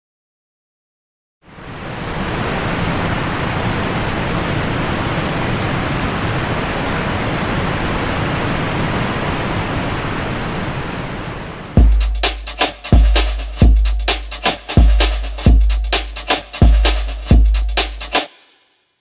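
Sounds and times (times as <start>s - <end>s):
large waterfall rushing: 1.5s - 11.8s.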